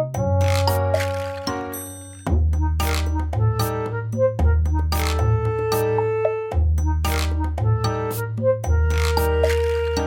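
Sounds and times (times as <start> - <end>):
bouncy tune with bass and beat: 0.0 - 10.0.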